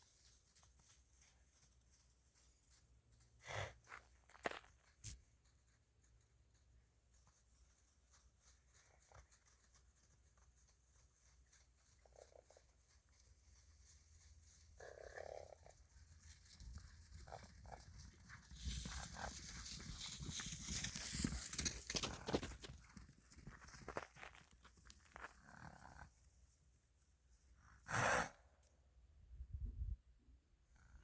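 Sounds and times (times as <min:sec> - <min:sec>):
horses galloping hoofbeats: 0:00.0 - 0:25.7.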